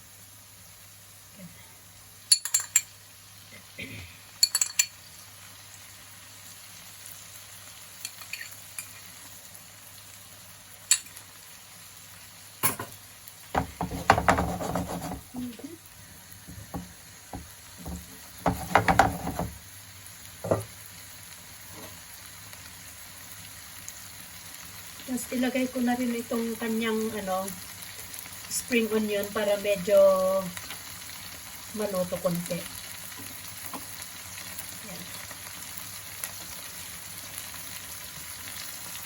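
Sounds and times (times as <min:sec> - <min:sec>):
food sizzling in a pot: 0:00.0 - 0:39.0
ladle stirring and scraping: 0:13.7 - 0:15.4.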